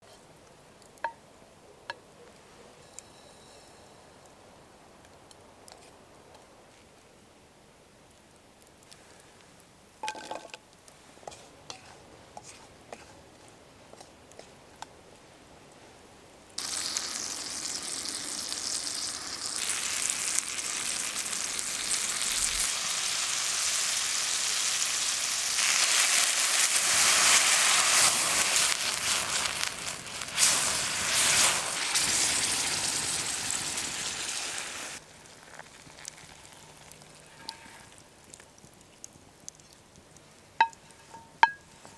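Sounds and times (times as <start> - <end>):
fruit sizzling in a hot pan: 16.6 - 38.4.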